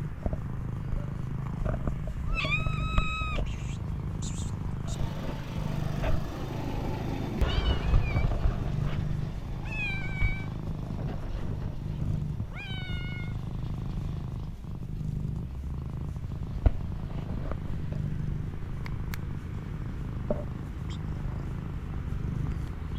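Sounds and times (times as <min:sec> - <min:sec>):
cat purring: 0:00.0 - 0:22.9
cat meowing: 0:02.3 - 0:05.1, 0:07.4 - 0:08.4, 0:09.6 - 0:10.5, 0:12.5 - 0:13.4.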